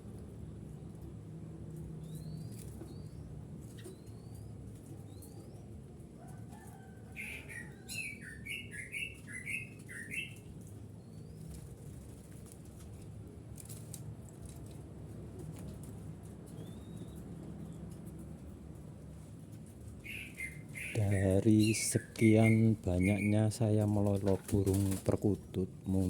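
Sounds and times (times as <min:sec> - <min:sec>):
birds chirping: 0:07.1 - 0:11.6, 0:19.9 - 0:26.0
bird call with falling notes: 0:20.1 - 0:23.5.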